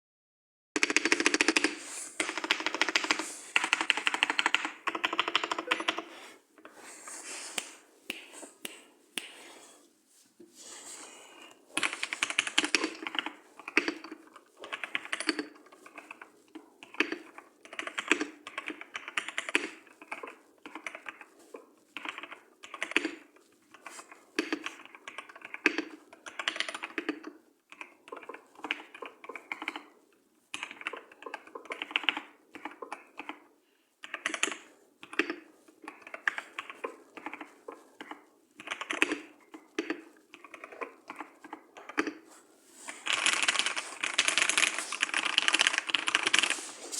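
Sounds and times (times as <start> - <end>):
keyboard typing clicks: 0.8 - 6.1, 11.8 - 21.2, 34.0 - 42.2, 43.0 - 46.6.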